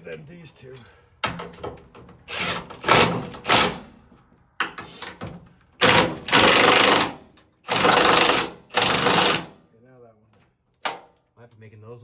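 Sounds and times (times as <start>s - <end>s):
impact wrench hammering bolts: 1.2s - 9.6s, 10.8s - 11.2s.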